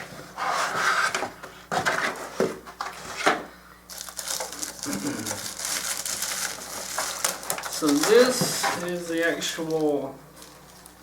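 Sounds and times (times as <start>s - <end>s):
cardboard and paper rustling: 3.9s - 11.0s.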